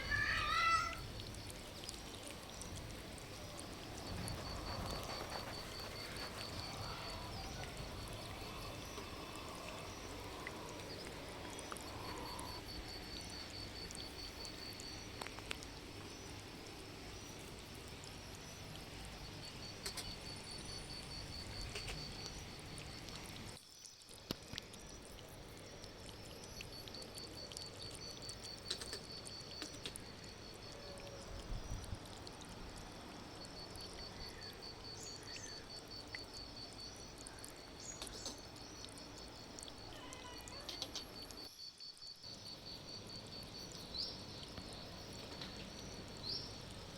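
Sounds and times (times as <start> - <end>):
insect pulsing trill: 0.0 - 16.3
steady rain: 0.0 - 41.5
faint clicks: 19.7 - 20.4, 26.4 - 30.1, 37.1 - 41.5.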